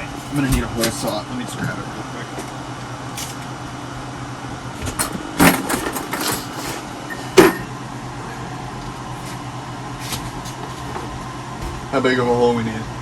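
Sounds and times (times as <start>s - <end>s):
steady low hum: 0.0s - 13.0s
tools clattering and knocking: 4.8s - 7.7s.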